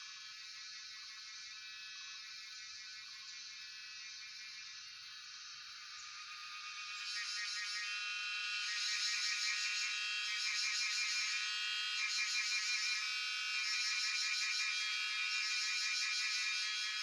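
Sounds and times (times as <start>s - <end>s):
cicadas chorusing: 0.2s - 17.0s.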